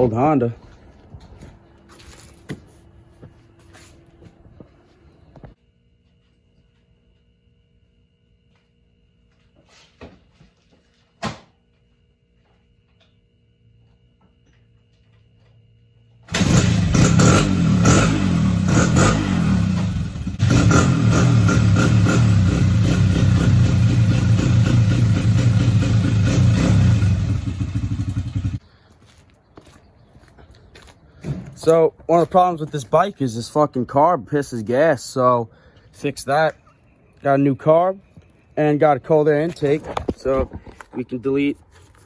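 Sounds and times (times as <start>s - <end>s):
dirt bike engine running: 16.3s - 28.6s.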